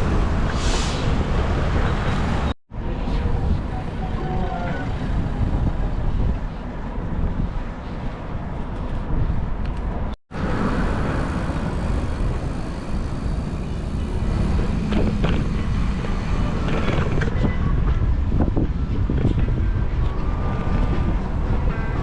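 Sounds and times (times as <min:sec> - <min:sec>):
road traffic: 0:00.0 - 0:22.0
wind on microphone: 0:02.8 - 0:10.1, 0:13.9 - 0:22.0.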